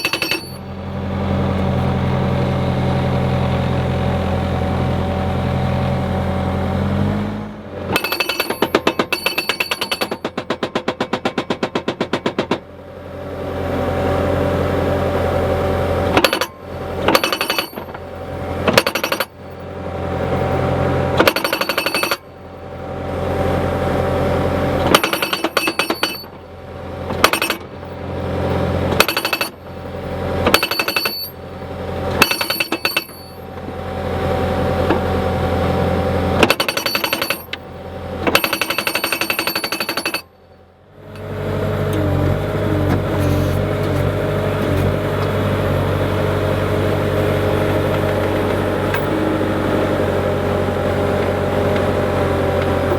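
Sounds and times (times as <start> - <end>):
post driver hammering: 0.0 - 0.6, 8.0 - 12.7, 18.7 - 19.3, 21.2 - 22.3, 24.8 - 26.4, 27.1 - 27.8, 28.9 - 29.7, 30.4 - 31.4, 32.2 - 33.7, 36.4 - 37.6, 38.2 - 40.3
skid steer engine running: 0.0 - 52.9.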